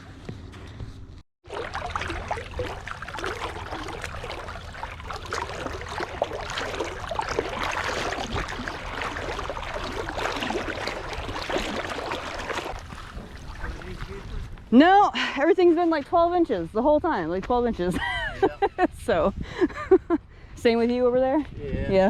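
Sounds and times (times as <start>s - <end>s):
seawater sloshing and splashing: 1.4s - 14.7s.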